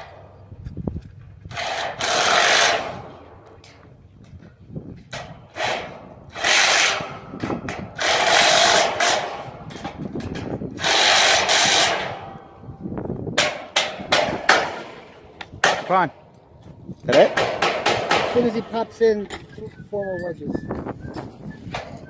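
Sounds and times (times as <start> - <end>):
sharp metal clanks: 13.4 - 19.8.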